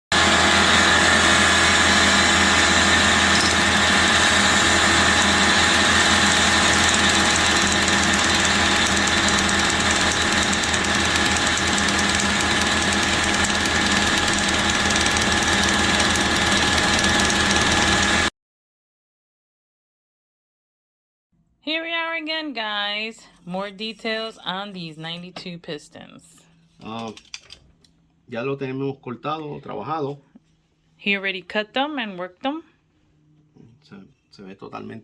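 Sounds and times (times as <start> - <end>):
metalworking machine whining: 0.1 - 18.3.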